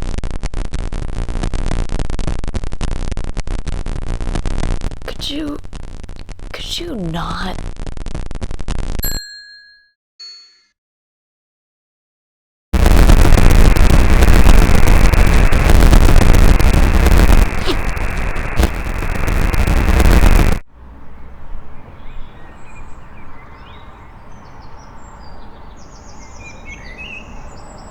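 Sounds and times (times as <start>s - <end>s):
loud static hiss and crackle: 0.2s - 7.7s, 12.8s - 20.6s.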